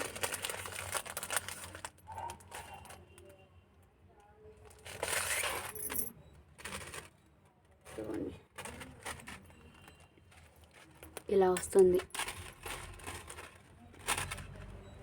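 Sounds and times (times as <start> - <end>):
plastic packet crinkling: 0.0 - 2.9, 7.9 - 14.8
jewellery clinking: 5.0 - 7.1.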